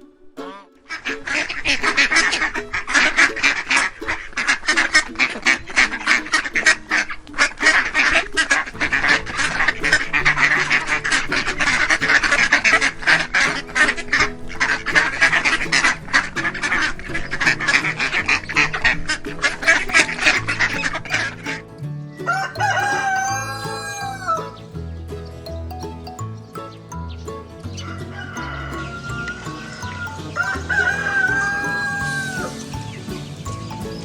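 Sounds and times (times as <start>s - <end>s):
background music: 0.0s - 34.0s
poultry calling: 19.6s - 34.0s
rooster crowing: 22.2s - 24.6s, 27.8s - 32.6s.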